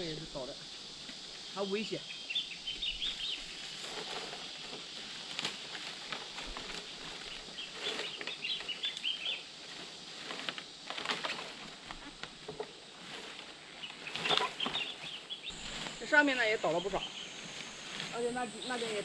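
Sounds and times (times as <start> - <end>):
small birds twittering: 0.0 - 4.7, 6.8 - 9.6, 13.6 - 19.0
high insect hiss: 0.0 - 19.0
leaves crunching underfoot: 0.0 - 19.0.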